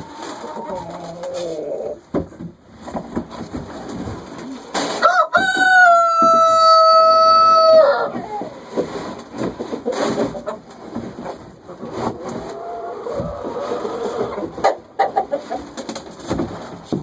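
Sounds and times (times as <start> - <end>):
hens clucking and scuffling: 0.0 - 17.0
rooster crowing: 5.0 - 8.2.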